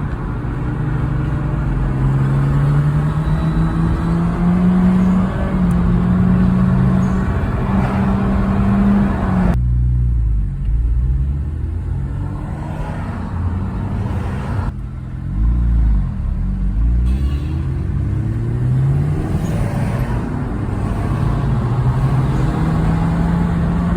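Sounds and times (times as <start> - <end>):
rotary engine running and revving: 0.0 - 9.6, 15.4 - 23.9.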